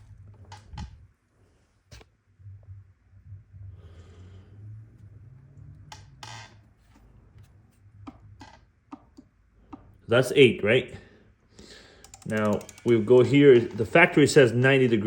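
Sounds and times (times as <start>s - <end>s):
low steady hum: 0.0s - 15.0s
torque wrench clicking: 11.6s - 13.9s
tool handling: 12.0s - 14.3s.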